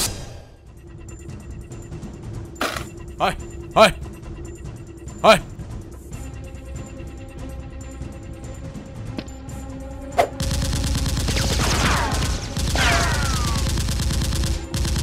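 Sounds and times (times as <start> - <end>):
background music: 0.0 - 15.0
rapid automatic gunfire: 10.4 - 15.0.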